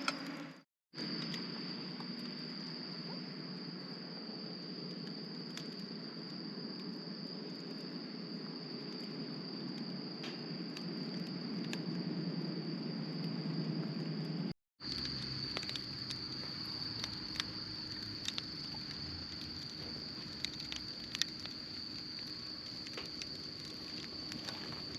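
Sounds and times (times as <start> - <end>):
crickets trilling: 1.0 - 24.9
faint crackles: 4.7 - 12.2, 13.2 - 24.9.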